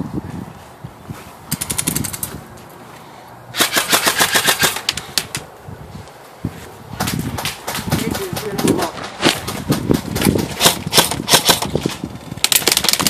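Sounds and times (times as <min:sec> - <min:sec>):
airsoft rifle full auto bursts: 0:03.6 - 0:04.9.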